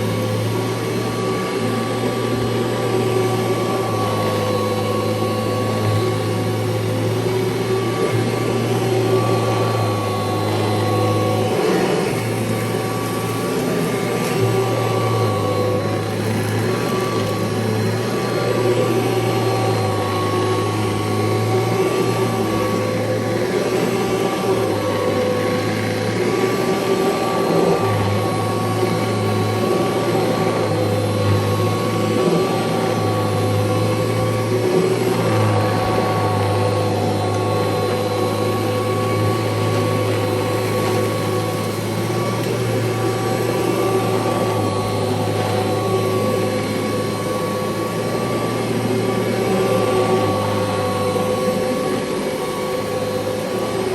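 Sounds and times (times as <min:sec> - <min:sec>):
vacuum cleaner motor whine: 0:00.0 - 0:53.9.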